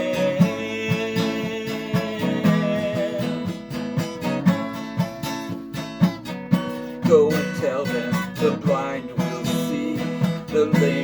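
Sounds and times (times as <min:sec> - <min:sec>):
worship song music: 0:00.0 - 0:04.4, 0:07.0 - 0:11.0
strummed acoustic guitar: 0:00.0 - 0:11.0.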